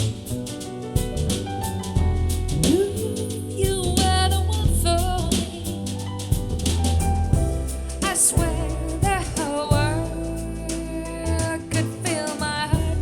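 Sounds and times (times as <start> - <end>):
bass: 0.0 - 13.0
drum kit: 0.0 - 13.0
person singing: 8.0 - 13.0.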